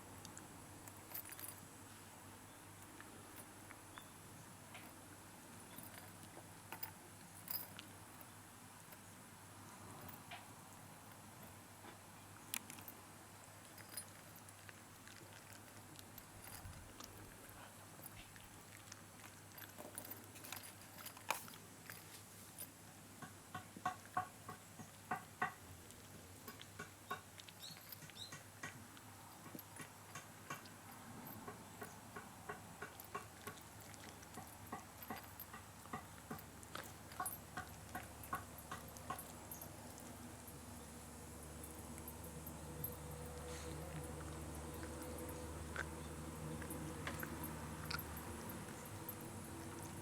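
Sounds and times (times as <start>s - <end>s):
dog licking and chewing: 13.6s - 22.1s, 31.4s - 50.0s.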